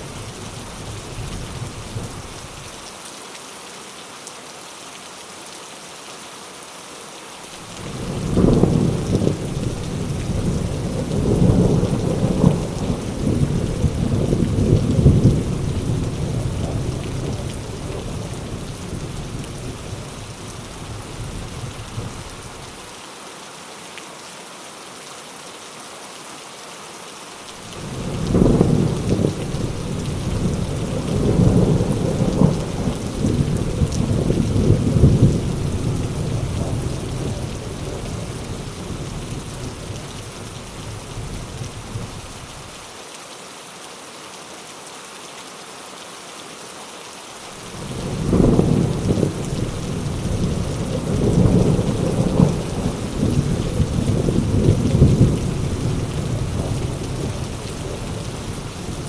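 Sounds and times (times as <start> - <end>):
heavy rain falling: 0.0 - 59.0
thunder rumbling: 7.8 - 22.5, 27.8 - 42.5, 47.7 - 59.0.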